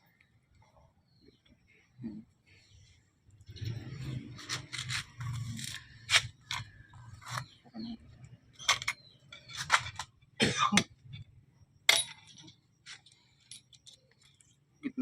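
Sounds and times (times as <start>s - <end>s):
tools and metal parts clicking: 3.6s - 7.5s, 8.5s - 10.1s, 11.9s - 14.5s.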